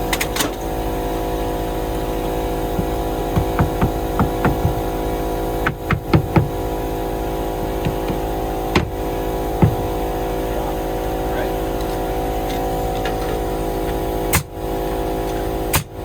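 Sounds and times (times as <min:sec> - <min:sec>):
engine humming: 0:00.0 - 0:16.0.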